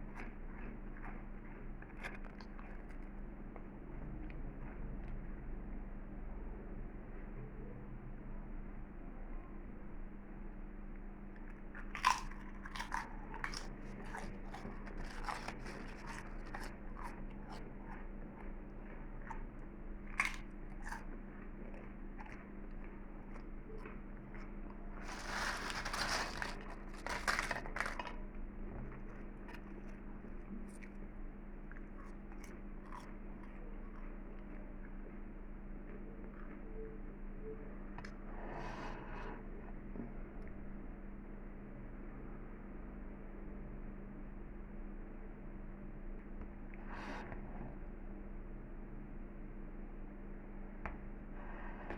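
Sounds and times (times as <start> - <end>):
potato chips crunching: 11.7 - 18.1, 20.1 - 21.2, 24.9 - 28.3.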